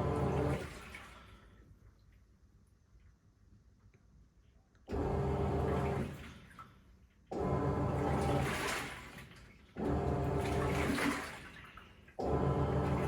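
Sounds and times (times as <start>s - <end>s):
washing machine motor hum: 0.0s - 0.9s, 4.9s - 6.3s, 7.3s - 9.1s, 9.8s - 11.4s, 12.2s - 13.0s
water swishing in washer: 0.0s - 1.4s, 4.9s - 13.0s.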